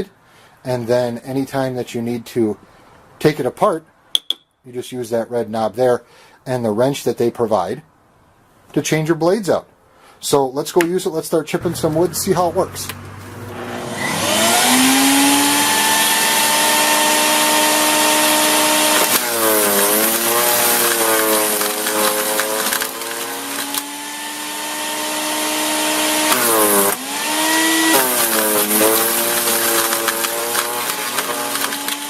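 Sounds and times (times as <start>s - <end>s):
wood being chipped: 11.6s - 32.0s
wood chipper motor whining: 11.6s - 32.0s.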